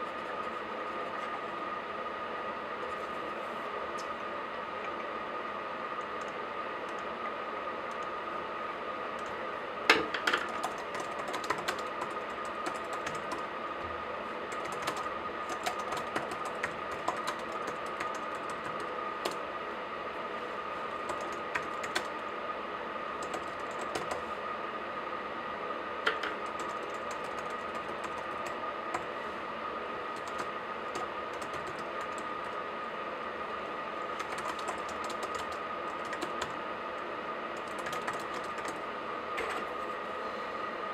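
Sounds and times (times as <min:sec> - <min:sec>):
laptop keyboard typing: 0:06.0 - 0:07.1, 0:09.2 - 0:13.5, 0:14.5 - 0:19.4, 0:21.0 - 0:22.2, 0:23.2 - 0:24.3, 0:26.1 - 0:29.1, 0:30.1 - 0:32.6, 0:34.1 - 0:36.6, 0:37.6 - 0:38.8.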